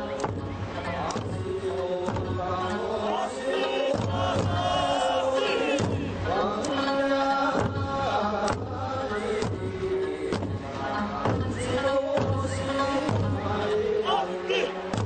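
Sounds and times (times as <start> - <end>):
voices chanting and singing: 0.0 - 15.0
sharp drum strikes: 3.9 - 5.0, 5.6 - 6.4.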